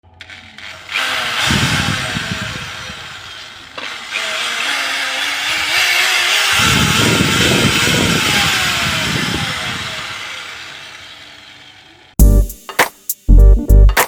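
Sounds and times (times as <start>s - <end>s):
small motor whirring: 0.1s - 12.2s.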